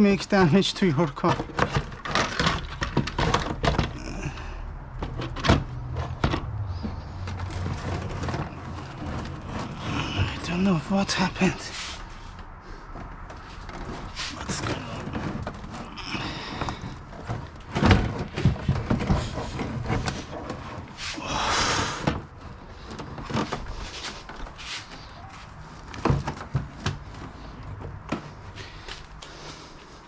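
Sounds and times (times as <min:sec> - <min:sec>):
scraping rustle: 0:00.0 - 0:30.0
sharp knocks and clicks: 0:04.9 - 0:09.7.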